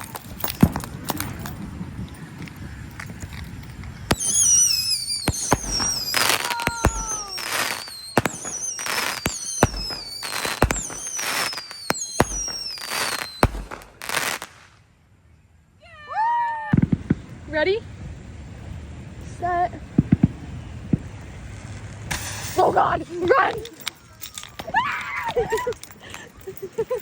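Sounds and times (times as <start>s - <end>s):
fireworks bangs and crackling: 0.0s - 14.8s, 19.9s - 24.0s
whistling fireworks: 0.0s - 15.4s, 16.2s - 23.1s.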